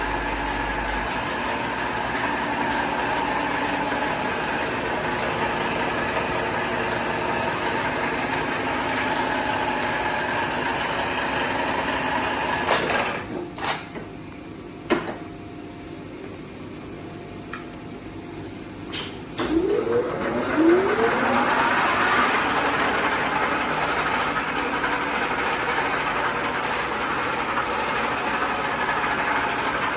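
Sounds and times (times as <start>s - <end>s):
lathe whirring with gear whine: 0.0s - 13.2s, 19.4s - 29.9s.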